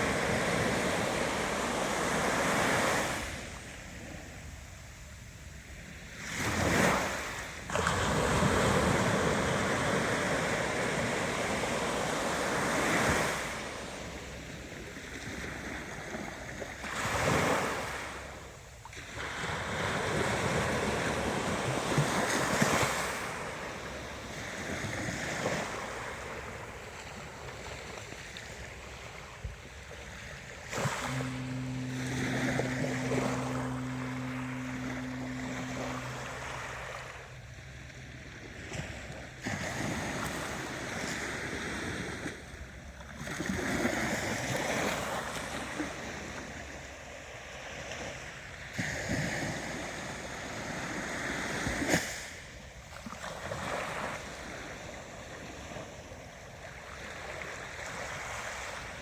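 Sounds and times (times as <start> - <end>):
ocean waves breaking: 0.0 - 46.1
steady low hum: 29.5 - 41.5.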